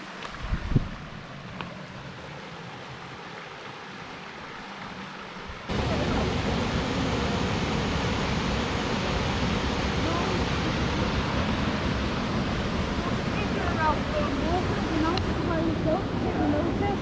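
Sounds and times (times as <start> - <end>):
waterfall rushing: 1.0 - 17.0.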